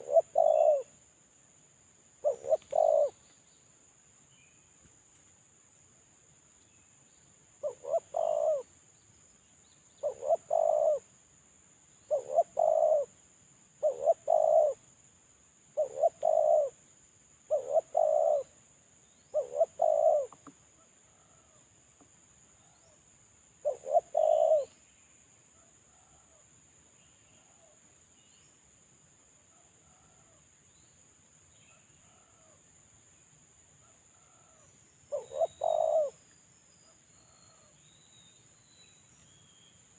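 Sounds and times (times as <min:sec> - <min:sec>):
dove cooing: 0:00.0 - 0:00.9, 0:02.2 - 0:03.2, 0:07.6 - 0:08.7, 0:10.0 - 0:11.1, 0:12.1 - 0:13.1, 0:13.8 - 0:14.8, 0:15.8 - 0:16.8, 0:17.5 - 0:18.6, 0:19.3 - 0:21.6, 0:23.6 - 0:24.8, 0:34.2 - 0:36.2
faint high-pitched whine: 0:00.0 - 0:39.9.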